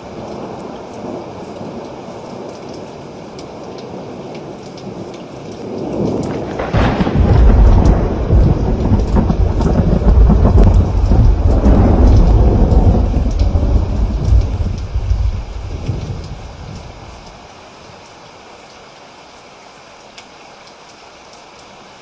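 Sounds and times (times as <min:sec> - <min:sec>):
steady rain falling: 0:00.0 - 0:22.0
thunderclap and rumble: 0:05.6 - 0:17.4.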